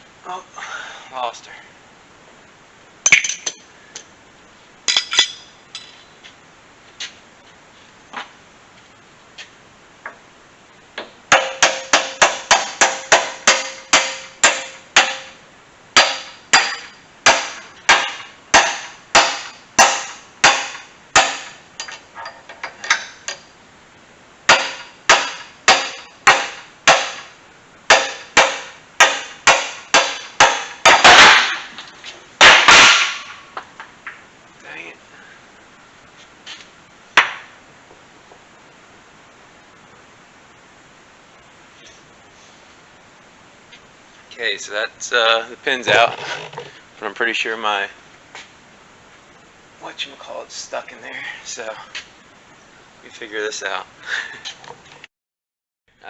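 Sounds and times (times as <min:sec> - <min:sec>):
hammer striking steel pin: 0:11.3 - 0:15.4, 0:16.0 - 0:23.4, 0:24.5 - 0:27.3, 0:27.9 - 0:31.2.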